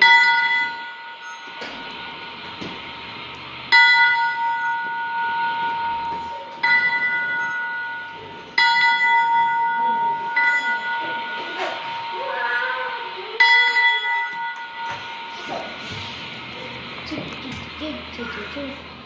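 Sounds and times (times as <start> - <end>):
metal bell ringing: 0.0 - 16.0.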